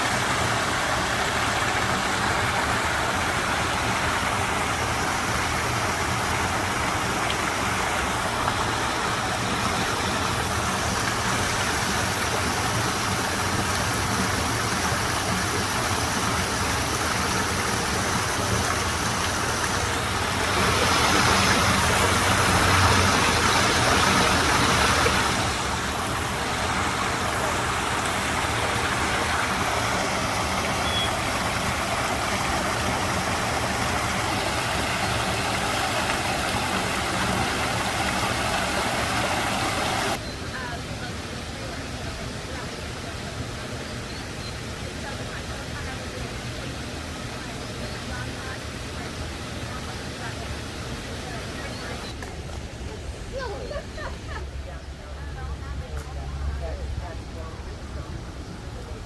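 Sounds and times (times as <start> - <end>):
waterfall splashing into pond: 0.0 - 54.5.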